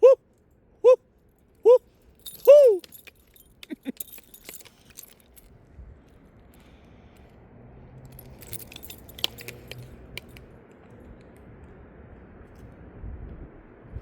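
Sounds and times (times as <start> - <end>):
light metallic jingling: 1.2 - 7.3, 7.9 - 10.5.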